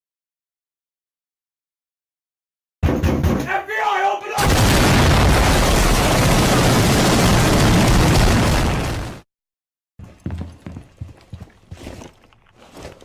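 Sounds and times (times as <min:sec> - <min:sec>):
person shouting: 0:03.4 - 0:04.6
loud explosion sound effect: 0:04.4 - 0:09.2.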